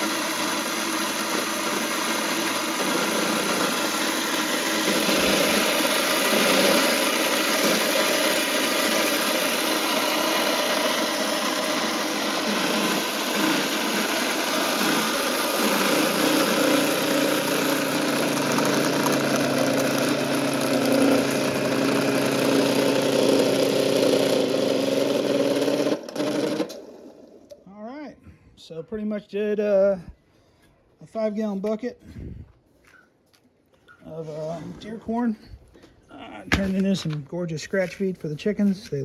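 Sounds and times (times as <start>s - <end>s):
electric grain mill grinding: 0.0s - 27.6s.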